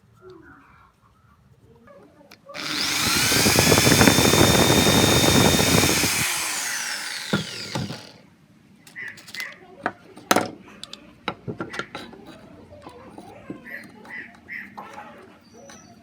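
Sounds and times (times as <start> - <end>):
power tool motor whine: 2.6 - 8.2.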